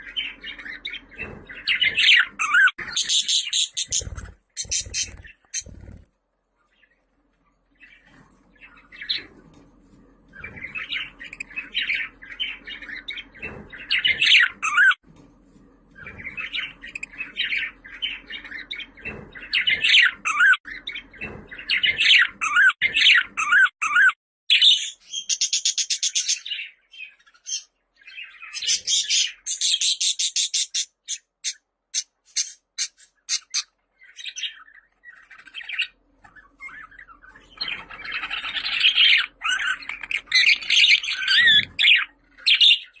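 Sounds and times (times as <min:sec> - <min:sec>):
budgerigar chirping: 0:00.2 - 0:05.8, 0:35.2 - 0:43.0.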